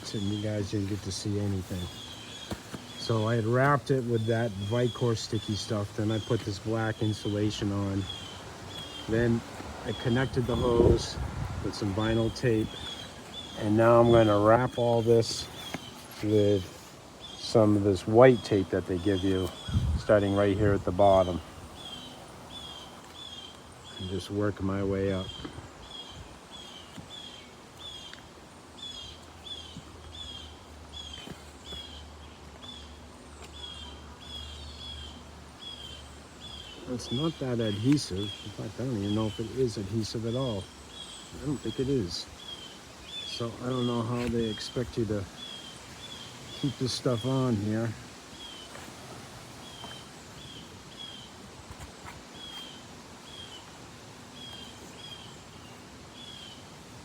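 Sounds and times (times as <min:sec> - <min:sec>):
bird chirping: 0:00.0 - 0:28.2
outdoor background hiss: 0:00.0 - 0:57.0.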